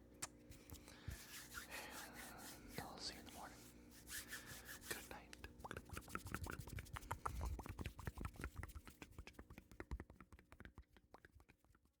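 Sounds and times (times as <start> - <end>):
rapid soft clicking and tapping: 5.3 - 12.0.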